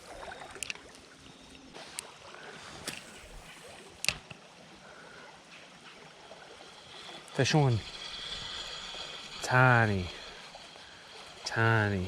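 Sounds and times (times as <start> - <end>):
creek water running: 0.0 - 12.0
sharp clicks: 4.0 - 4.4.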